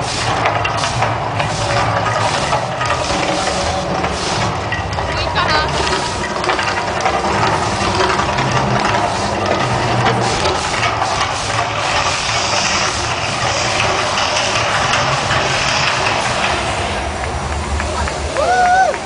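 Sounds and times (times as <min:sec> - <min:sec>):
dense rushing noise: 0:00.0 - 0:19.0
loud low rumble: 0:00.0 - 0:19.0.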